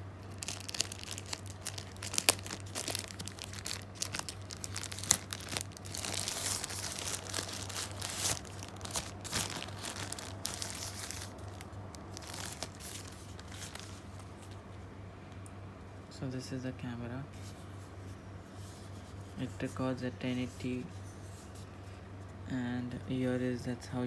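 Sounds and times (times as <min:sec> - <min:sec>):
steady low hum: 0:00.0 - 0:24.0
packaging crinkling: 0:00.2 - 0:14.6.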